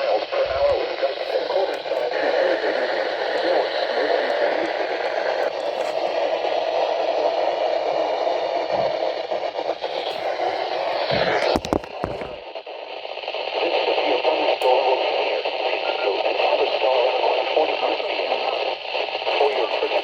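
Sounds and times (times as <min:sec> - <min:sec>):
radio static hiss: 0:00.0 - 0:20.0
clicks and crackles: 0:00.6 - 0:06.4, 0:09.6 - 0:12.4.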